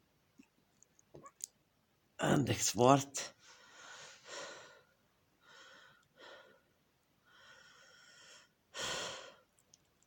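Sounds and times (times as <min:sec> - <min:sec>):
person breathing softly: 0:03.3 - 0:09.6.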